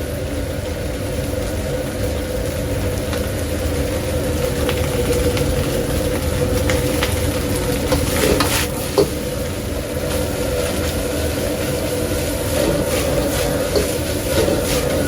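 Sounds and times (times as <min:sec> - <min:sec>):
burner or fan rumble: 0:00.0 - 0:15.0
rice frying in a pan: 0:00.0 - 0:15.0
metal spatula scraping pan: 0:07.9 - 0:09.1, 0:12.5 - 0:15.0.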